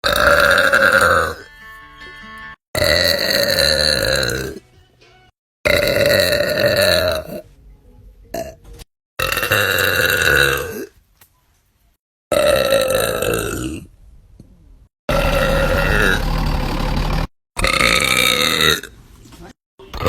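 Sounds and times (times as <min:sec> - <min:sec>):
women burping: 0:02.8 - 0:04.6, 0:05.7 - 0:07.4, 0:15.1 - 0:16.3, 0:17.6 - 0:18.9.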